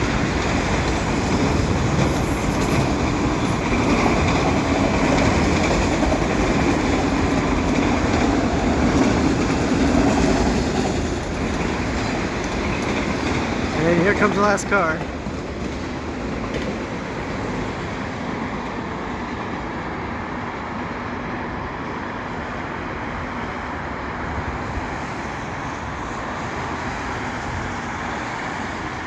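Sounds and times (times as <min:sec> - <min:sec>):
road traffic hum: 0:00.0 - 0:29.0.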